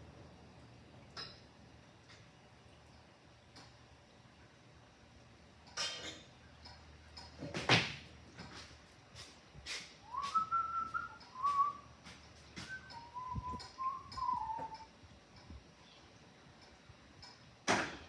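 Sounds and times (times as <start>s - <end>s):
person whistling: 10.1s - 11.9s, 12.6s - 14.9s.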